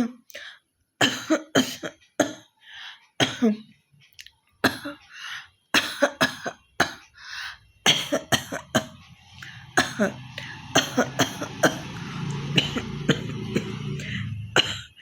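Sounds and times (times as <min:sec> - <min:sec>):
woman coughing and hawking: 0:01.0 - 0:02.4, 0:03.2 - 0:03.6, 0:04.6 - 0:05.0, 0:05.8 - 0:07.0, 0:07.9 - 0:09.0, 0:09.8 - 0:15.0.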